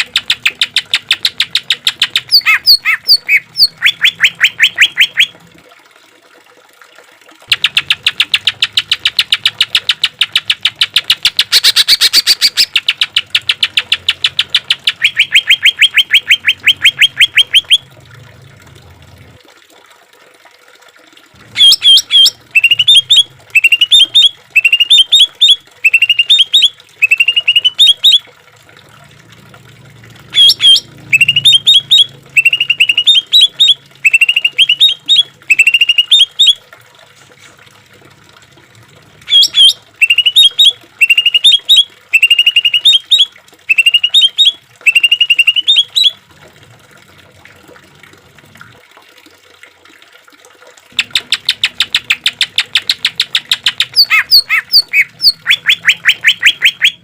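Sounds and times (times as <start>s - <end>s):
bird singing sharp rising notes: 30.4s - 36.2s.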